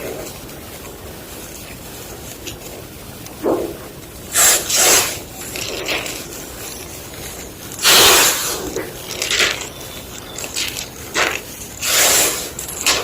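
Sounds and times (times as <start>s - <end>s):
chalk crunching and crumbling: 0.0s - 13.0s.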